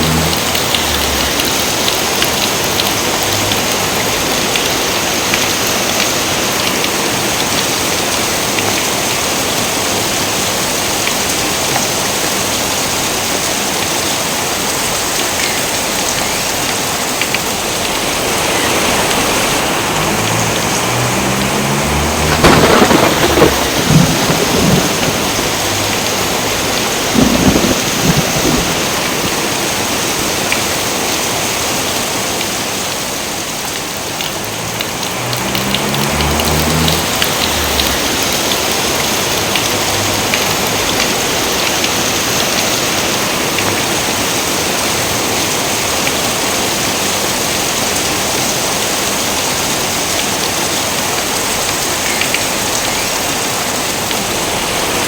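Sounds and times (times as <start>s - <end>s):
thunder cracking and rumbling: 0.0s - 4.2s, 17.8s - 30.2s, 34.3s - 41.3s
steady rain falling: 0.0s - 55.0s.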